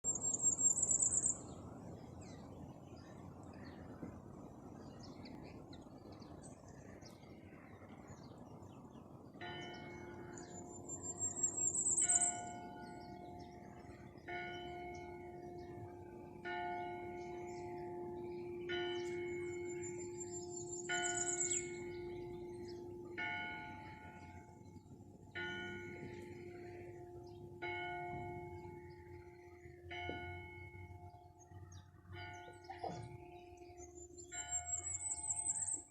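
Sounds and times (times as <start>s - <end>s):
bird trilling: 18.6s - 22.2s, 32.6s - 35.9s.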